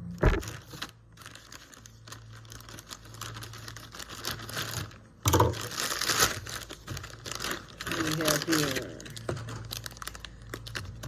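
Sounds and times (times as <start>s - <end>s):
packaging crinkling and rustling: 0.2s - 11.0s.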